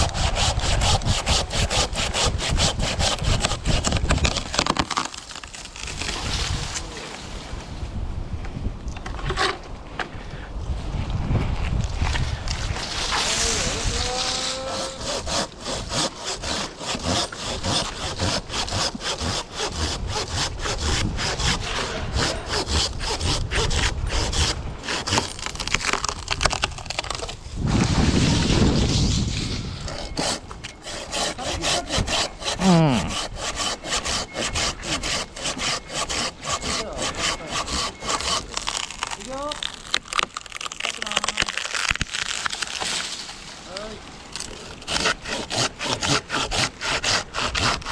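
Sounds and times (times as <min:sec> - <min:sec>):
pull saw cutting wood: 0:00.0 - 0:06.3, 0:12.8 - 0:27.4, 0:29.9 - 0:40.7, 0:44.4 - 0:47.9.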